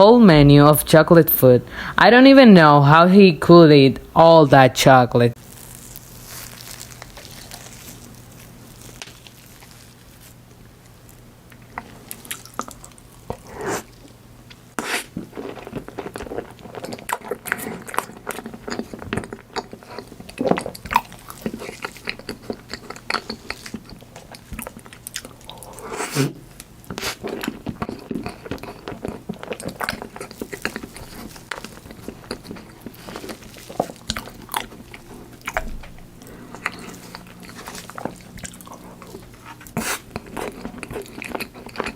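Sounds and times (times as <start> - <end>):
person biting and chewing: 5.5 - 9.9, 14.8 - 41.9.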